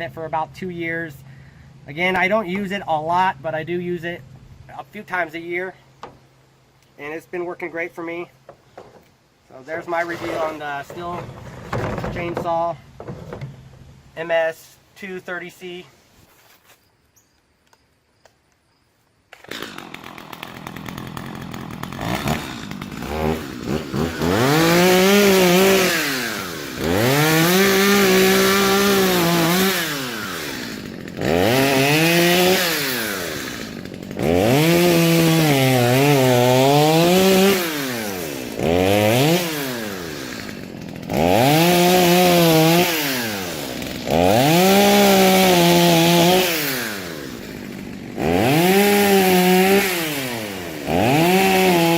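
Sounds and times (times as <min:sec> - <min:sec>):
chainsaw idling and revving: 0:19.3 - 0:51.9.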